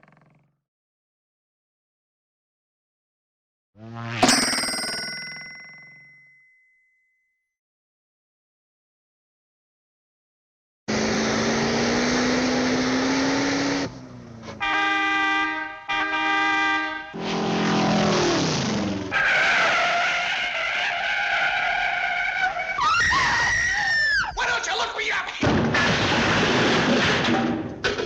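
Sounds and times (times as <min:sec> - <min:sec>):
cartoon car engine running: 0:00.0 - 0:00.4, 0:03.8 - 0:05.8, 0:10.9 - 0:22.8
tone gliding down: 0:03.8 - 0:05.6
high tire screech: 0:10.9 - 0:24.4
car horn honks: 0:14.5 - 0:17.2.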